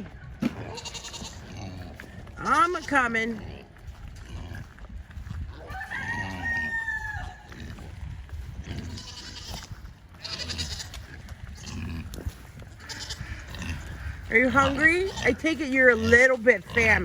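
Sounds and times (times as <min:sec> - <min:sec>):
shrill livestock calls: 0:00.3 - 0:03.4, 0:05.5 - 0:08.0, 0:08.6 - 0:17.0
rooster crowing: 0:05.6 - 0:07.6.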